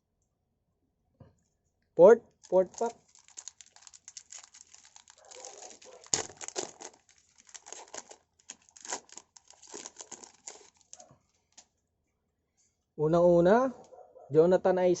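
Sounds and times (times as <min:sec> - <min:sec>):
wrapper tearing and crinkling: 0:02.4 - 0:11.6.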